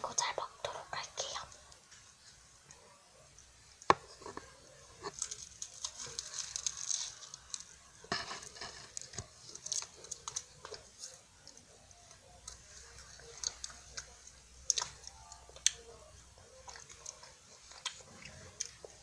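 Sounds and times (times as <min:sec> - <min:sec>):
plastic wrapper crinkling: 0:05.0 - 0:15.9.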